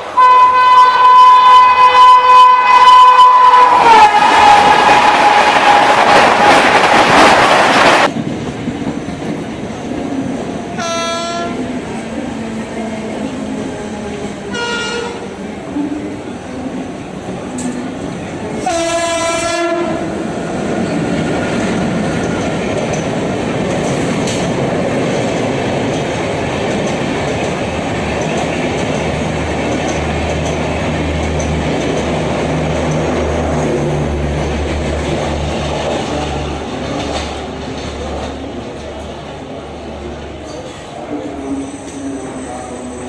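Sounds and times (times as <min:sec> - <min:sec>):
locomotive twin-tone horn: 0:00.0 - 0:06.0, 0:10.8 - 0:11.7, 0:14.5 - 0:15.4, 0:18.6 - 0:20.2
train wheels clattering on rails: 0:04.3 - 0:12.0, 0:17.4 - 0:43.0.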